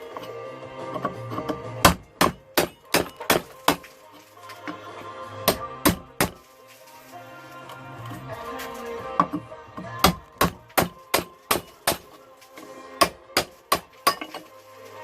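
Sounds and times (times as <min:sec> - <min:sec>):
background music: 0:00.0 - 0:15.0
hammer striking chisel: 0:00.9 - 0:03.9, 0:05.5 - 0:06.4, 0:09.2 - 0:14.5.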